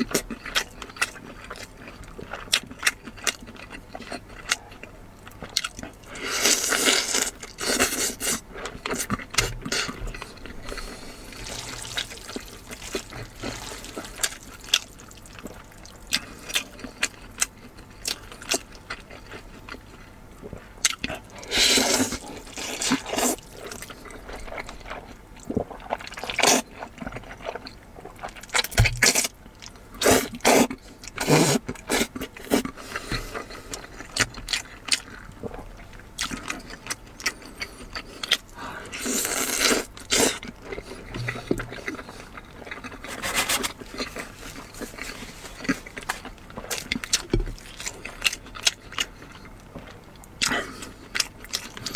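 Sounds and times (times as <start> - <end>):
wet chewing clicks: 0.2 - 19.8, 39.2 - 51.9
slurping: 6.3 - 15.5, 39.0 - 46.2.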